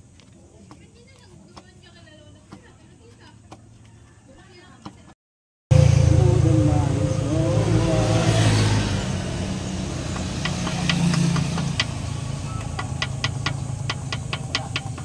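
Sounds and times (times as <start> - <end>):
low engine hum: 5.7 - 15.0.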